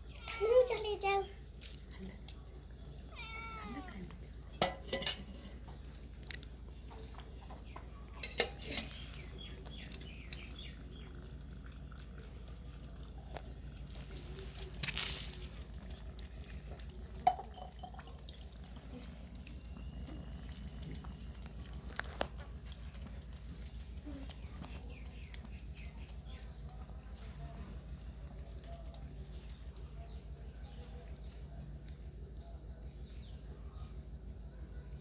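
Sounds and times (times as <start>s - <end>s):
steady low hum: 1.2s - 35.0s
clinks and knocks of dishes: 4.5s - 9.0s, 16.8s - 18.7s.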